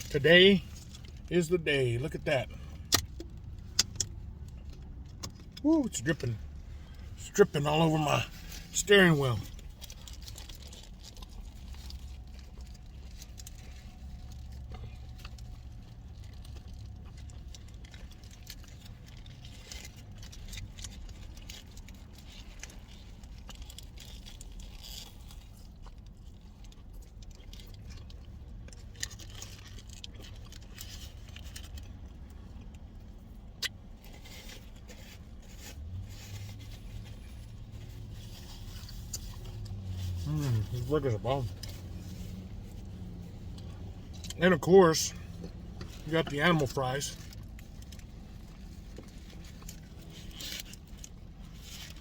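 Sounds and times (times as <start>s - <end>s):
car interior hum: 0.0s - 52.0s
person chewing food: 9.5s - 40.8s.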